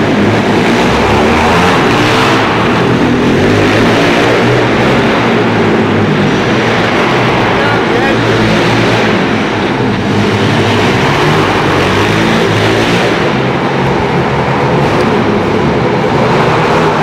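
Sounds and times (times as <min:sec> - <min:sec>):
pit bike engine revving: 0:00.0 - 0:17.0.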